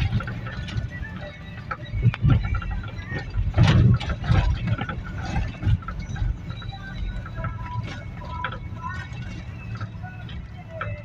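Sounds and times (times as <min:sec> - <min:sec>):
road and engine rumble: 0:00.0 - 0:11.0
car knocks and bumps: 0:01.8 - 0:06.4.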